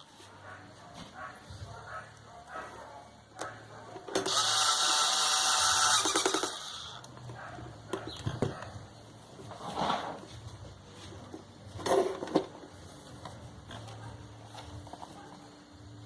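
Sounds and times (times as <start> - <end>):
small motorized hand tool: 4.2 - 7.0.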